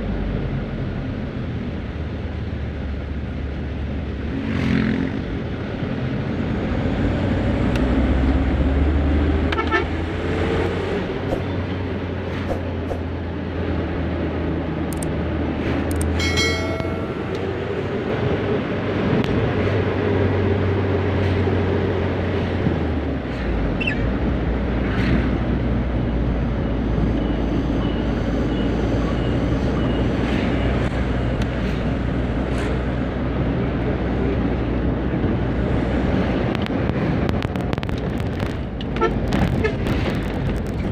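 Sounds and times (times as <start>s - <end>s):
vehicle horn toot: 9.6s - 9.9s.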